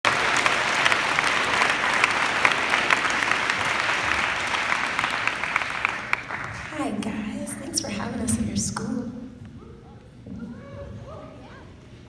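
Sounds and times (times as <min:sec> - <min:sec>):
audience clapping: 0:00.0 - 0:07.6.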